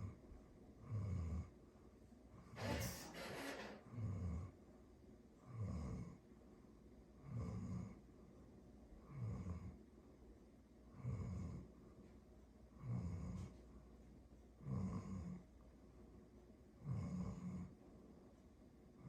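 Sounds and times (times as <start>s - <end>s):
dog snoring: 0.8s - 1.5s, 5.4s - 6.2s, 7.2s - 8.0s, 9.0s - 9.8s, 10.9s - 11.7s, 12.8s - 13.6s, 14.6s - 15.5s, 16.8s - 17.8s.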